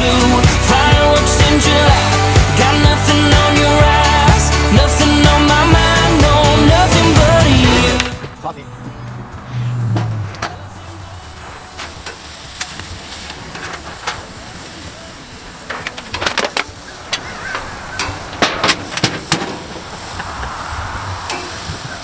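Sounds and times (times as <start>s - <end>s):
steady hiss: 10.6s - 22.0s.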